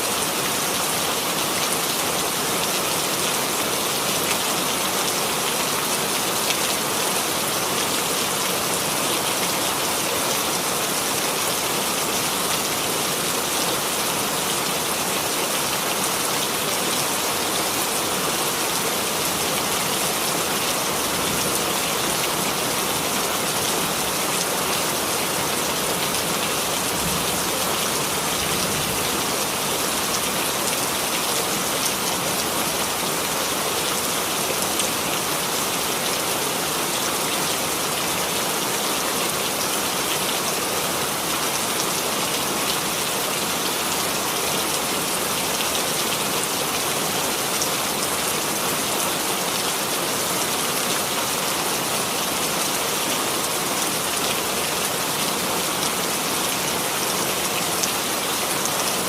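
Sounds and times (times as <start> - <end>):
steady rain hiss: 0.0 - 59.0.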